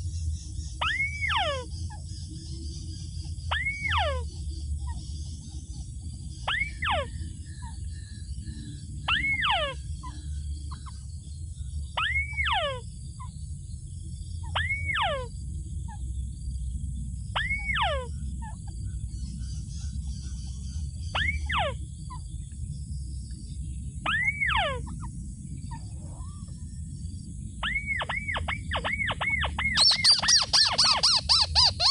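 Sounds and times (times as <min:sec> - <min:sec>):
steady low rumble: 0:00.0 - 0:31.9
bird calling: 0:00.7 - 0:13.4, 0:14.4 - 0:15.3, 0:17.4 - 0:22.4, 0:24.0 - 0:26.7, 0:27.6 - 0:31.9.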